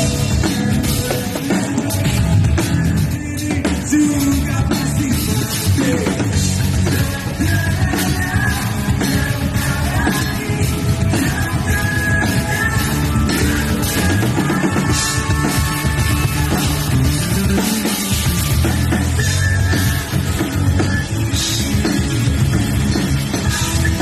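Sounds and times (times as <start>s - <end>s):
drum kit beat: 0.0s - 24.0s
electric guitars: 0.0s - 24.0s
person singing: 0.0s - 24.0s.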